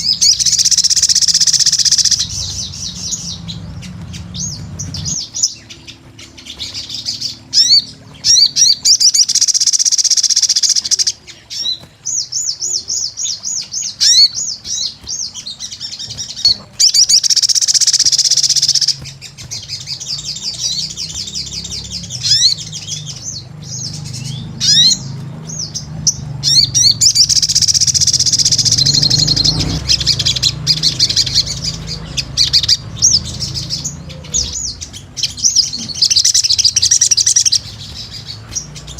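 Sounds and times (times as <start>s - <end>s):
bird trilling song: 0.0s - 38.9s.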